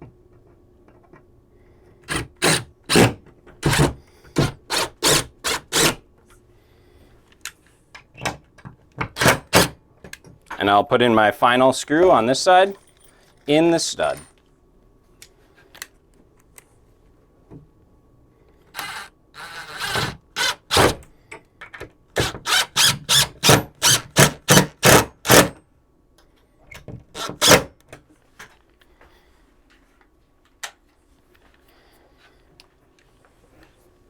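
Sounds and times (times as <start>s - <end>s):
screwdriver driving screw rasping: 2.1s - 6.0s, 18.8s - 21.0s, 22.2s - 25.5s, 27.2s - 27.6s.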